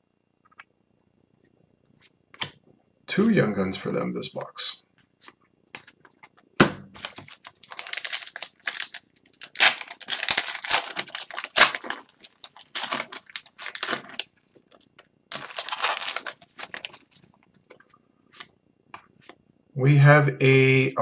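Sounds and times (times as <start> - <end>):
foil wrapper crinkling and tearing: 7.0 - 17.4.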